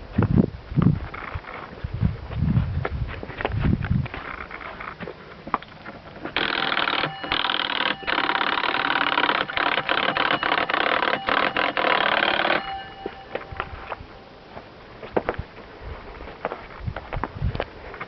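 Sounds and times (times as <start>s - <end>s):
electric doorbell ringing: 6.4s - 14.4s.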